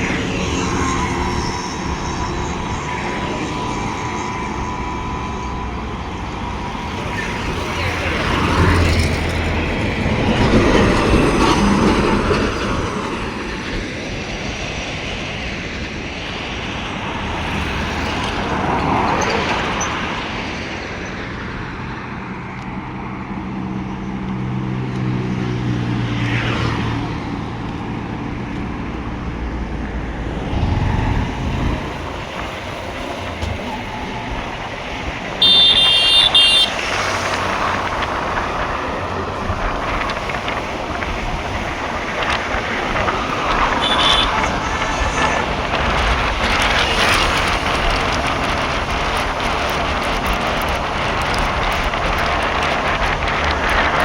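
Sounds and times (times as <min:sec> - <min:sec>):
engine drone: 0:00.0 - 0:54.0
rumble of passing vehicles: 0:00.0 - 0:54.0
short vehicle horn: 0:35.4 - 0:36.8, 0:43.8 - 0:44.5.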